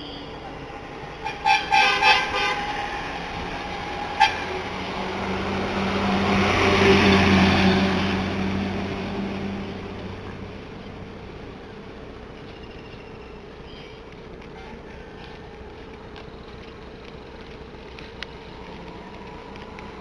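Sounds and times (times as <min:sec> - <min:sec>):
motor vehicle passing: 0:00.3 - 0:11.2, 0:14.5 - 0:20.0
vehicle horn honks: 0:01.2 - 0:02.7.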